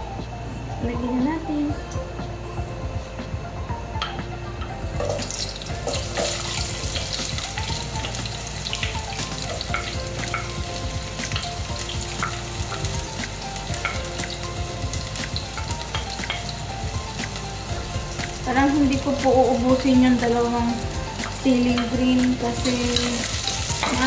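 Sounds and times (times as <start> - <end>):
oil popping: 4.0 - 20.3
onions sizzling in oil: 4.9 - 24.0.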